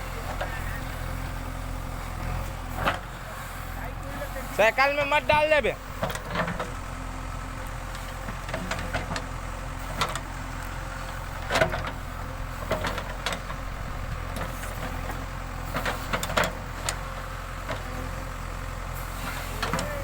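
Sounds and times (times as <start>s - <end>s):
diesel engine running: 0.0s - 20.0s
metal clanks and knocks: 6.0s - 6.8s.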